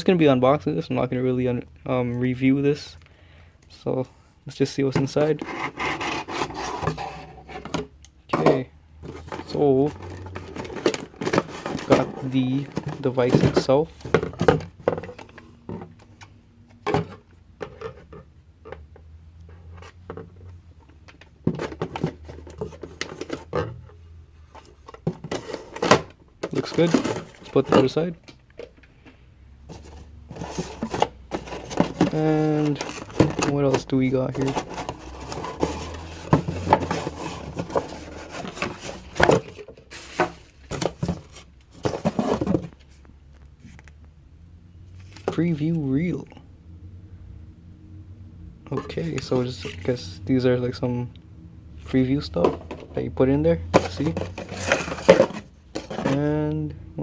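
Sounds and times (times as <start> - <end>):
packaging being rummaged through: 4.9 - 15.9, 21.0 - 23.8, 24.5 - 28.8, 29.7 - 43.4, 53.7 - 56.3.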